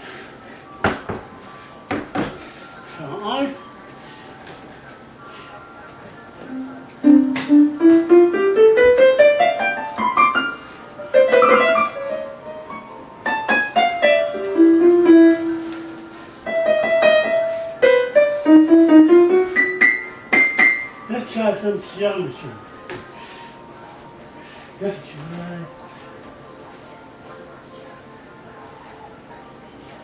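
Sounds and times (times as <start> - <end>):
electronic keyboard piano notes: 6.2 - 26.6.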